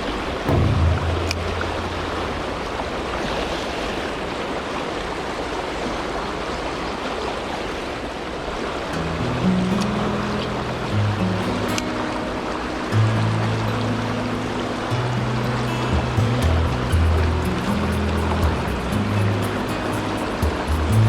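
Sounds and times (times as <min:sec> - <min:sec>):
low steady tones: 0:00.0 - 0:03.8, 0:09.0 - 0:21.0
flowing river water: 0:00.0 - 0:21.0
background music: 0:09.0 - 0:21.0.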